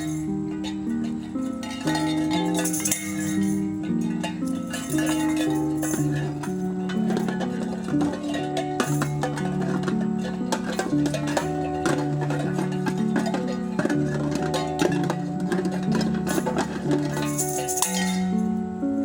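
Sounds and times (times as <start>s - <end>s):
plucked strings: 0.0s - 19.0s.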